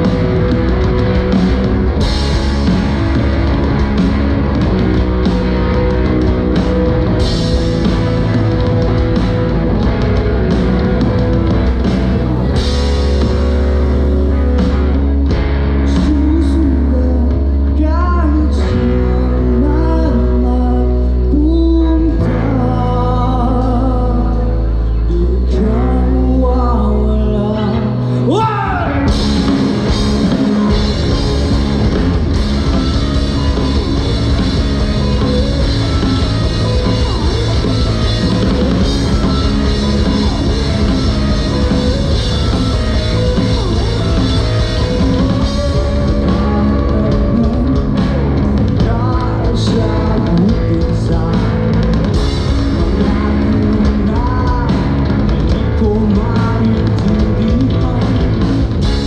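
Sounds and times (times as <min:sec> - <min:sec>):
drum kit: 0:00.0 - 0:20.3, 0:28.3 - 0:59.0
electric guitar: 0:00.0 - 0:59.0
person singing: 0:15.8 - 0:59.0.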